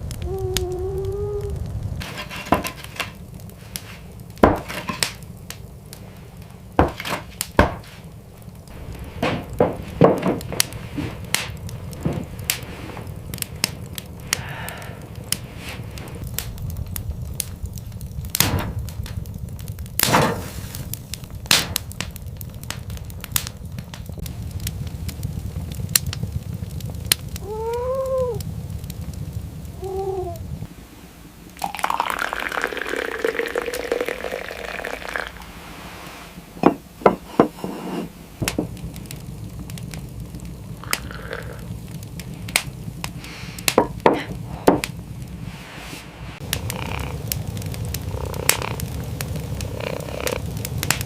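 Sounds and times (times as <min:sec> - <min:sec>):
low rumble: 0:00.0 - 0:31.6, 0:38.2 - 0:51.0
knocks and cracks: 0:02.0 - 0:05.7, 0:06.7 - 0:08.1, 0:08.7 - 0:14.4, 0:17.4 - 0:24.7, 0:38.4 - 0:41.1, 0:42.5 - 0:45.0, 0:48.3 - 0:49.0.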